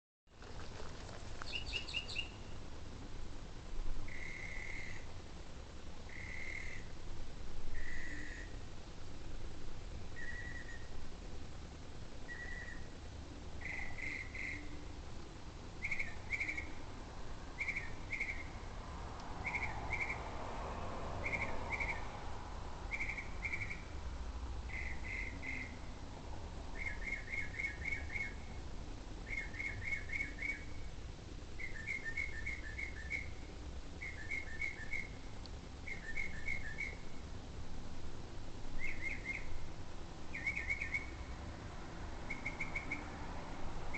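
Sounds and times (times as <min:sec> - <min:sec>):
low steady rumble: 0:00.3 - 0:43.9
bird whistling calls: 0:01.4 - 0:02.6, 0:04.1 - 0:05.1, 0:06.1 - 0:06.9, 0:07.7 - 0:08.6, 0:10.2 - 0:10.9, 0:12.3 - 0:12.9, 0:13.6 - 0:14.8, 0:15.8 - 0:16.8, 0:17.6 - 0:18.6, 0:19.4 - 0:20.2, 0:21.2 - 0:22.1, 0:22.9 - 0:23.9, 0:24.7 - 0:25.9, 0:26.7 - 0:28.5, 0:29.2 - 0:30.9, 0:31.6 - 0:35.2, 0:35.8 - 0:37.2, 0:38.8 - 0:39.6, 0:40.3 - 0:41.3, 0:42.3 - 0:43.1.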